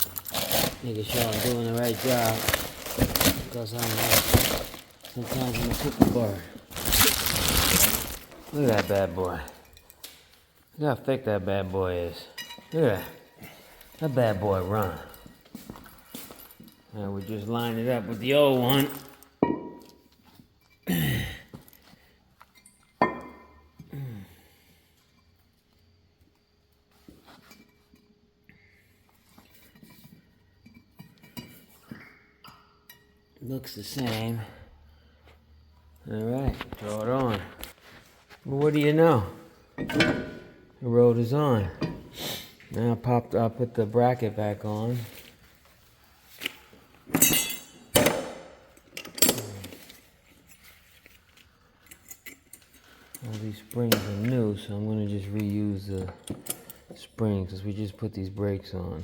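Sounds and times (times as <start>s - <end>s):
metal brake rotors clinking: 38.6s - 42.2s, 47.1s - 50.0s
metal clanking: 39.7s - 40.7s.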